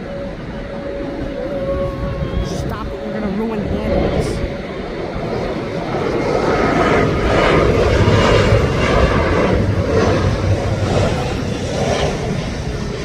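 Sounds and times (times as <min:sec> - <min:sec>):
airplane passing rumble: 0:00.0 - 0:13.0
faint whine: 0:00.0 - 0:13.0.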